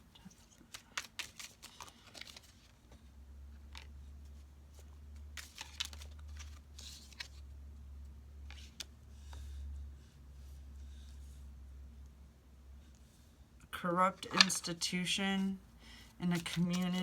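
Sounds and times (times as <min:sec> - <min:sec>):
cards being shuffled: 0:00.2 - 0:03.0, 0:03.6 - 0:07.4, 0:08.4 - 0:09.5, 0:14.0 - 0:15.5, 0:16.2 - 0:17.0
low steady hum: 0:02.3 - 0:17.0.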